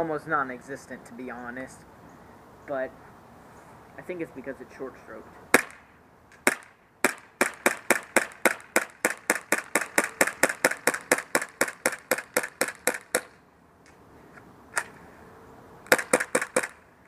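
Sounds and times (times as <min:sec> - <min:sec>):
airsoft pistol shots: 0:05.5 - 0:05.8, 0:06.4 - 0:13.4, 0:15.9 - 0:16.8.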